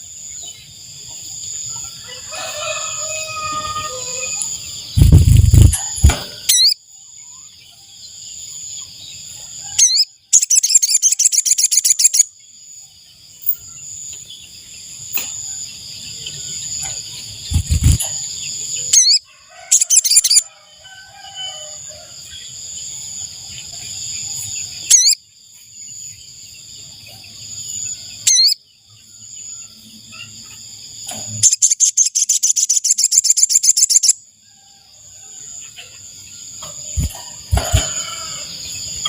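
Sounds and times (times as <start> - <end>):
high insect-like whine: 0.0 - 39.0
bird trilling: 3.0 - 6.8, 9.8 - 12.2, 18.9 - 20.4, 24.9 - 25.2, 28.3 - 28.6.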